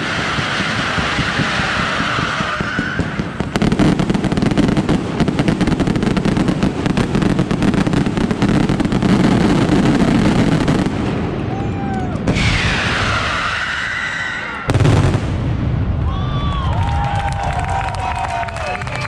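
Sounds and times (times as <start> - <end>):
firework hissing rush: 0.0 - 11.0, 12.3 - 15.2
rapid fireworks bangs: 0.0 - 13.7, 14.6 - 17.5.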